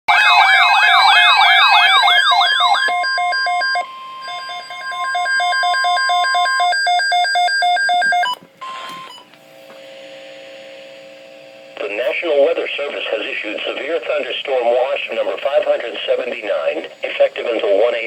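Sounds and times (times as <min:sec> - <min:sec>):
warbling emergency alert siren: 0:00.1 - 0:09.0
rapid pulsing beeps: 0:00.9 - 0:09.2.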